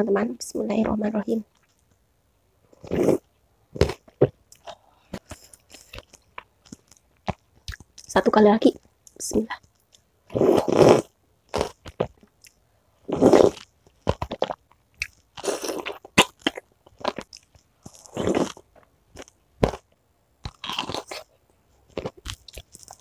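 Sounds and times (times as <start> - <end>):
person chewing crunchy food: 2.7 - 8.1, 9.6 - 23.0.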